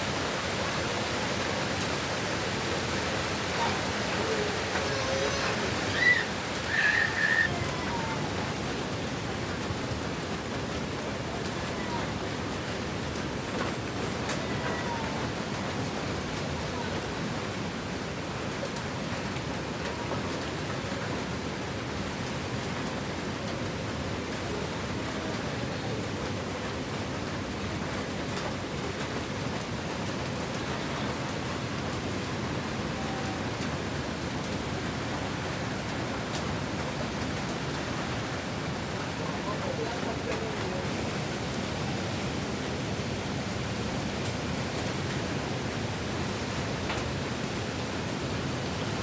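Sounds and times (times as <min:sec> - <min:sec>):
wind and rain rushing: 0:00.0 - 0:49.0
faint raindrop ticks: 0:13.1 - 0:16.9, 0:18.5 - 0:21.2, 0:35.8 - 0:38.2, 0:44.2 - 0:45.2, 0:46.8 - 0:47.6.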